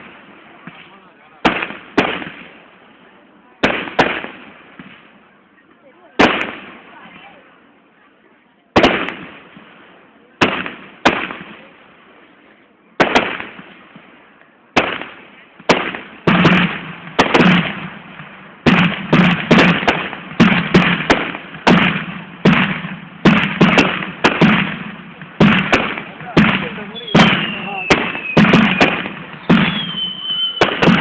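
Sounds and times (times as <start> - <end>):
fireworks bangs with echo: 0.0 - 5.4, 6.1 - 7.6, 8.7 - 12.4, 13.0 - 31.0.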